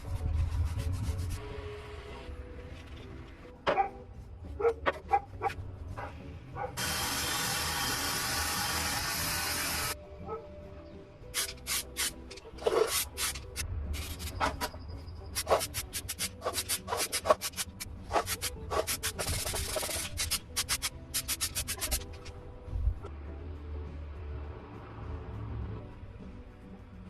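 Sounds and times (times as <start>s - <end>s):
sandpaper rubbing by hand: 0.0s - 2.2s, 11.4s - 14.6s, 15.4s - 22.3s.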